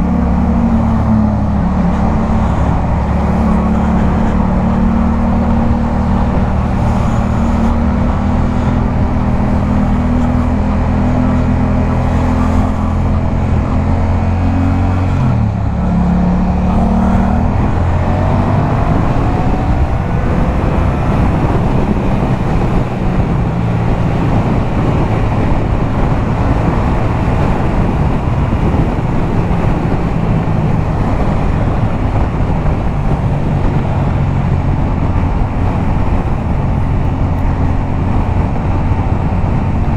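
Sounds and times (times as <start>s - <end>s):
motorcycle engine at speed: 0.0s - 39.9s
wind noise: 0.0s - 39.9s.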